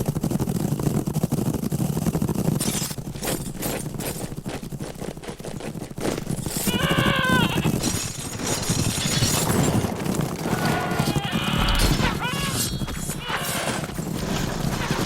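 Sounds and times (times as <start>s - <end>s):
clatter of quick impacts: 0.0s - 6.7s, 7.8s - 15.0s
pitched cry: 6.7s - 7.7s, 10.5s - 13.8s.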